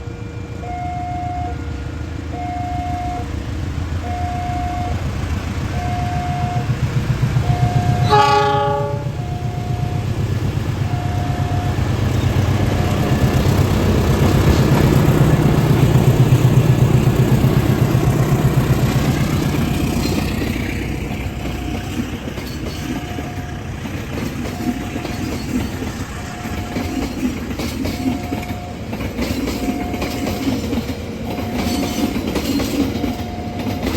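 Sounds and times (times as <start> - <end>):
train rumbling past: 0.0 - 33.9
train horn blast: 7.4 - 10.0, 10.9 - 12.0.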